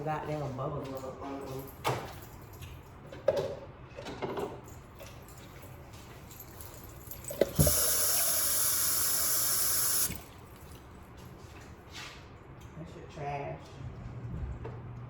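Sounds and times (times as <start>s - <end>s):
water running into sink: 7.3s - 10.4s
thump: 7.6s - 7.8s.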